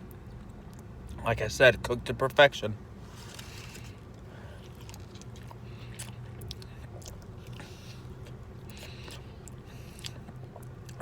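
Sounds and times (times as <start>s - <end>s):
low steady hum: 0.0s - 11.0s
person chewing: 3.1s - 11.0s.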